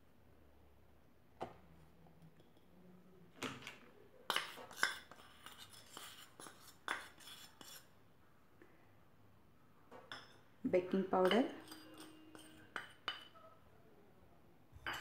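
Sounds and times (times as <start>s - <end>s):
spoon clinking against a bowl: 10.1s - 10.5s, 11.2s - 13.5s.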